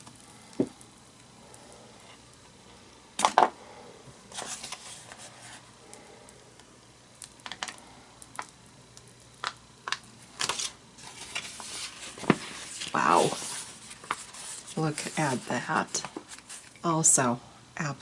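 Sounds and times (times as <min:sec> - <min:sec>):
paper rustling: 0:04.3 - 0:05.6, 0:10.4 - 0:16.8.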